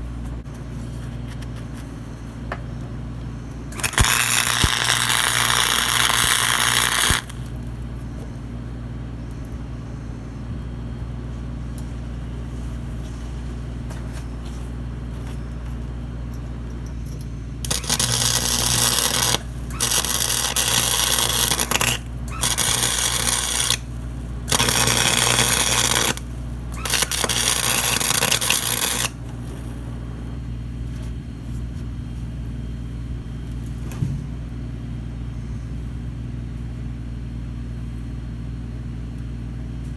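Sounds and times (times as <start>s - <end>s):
steady low hum: 0.0s - 39.9s
loud burst of noise: 3.7s - 7.4s
welding arc crackling: 3.7s - 7.8s, 17.6s - 29.9s.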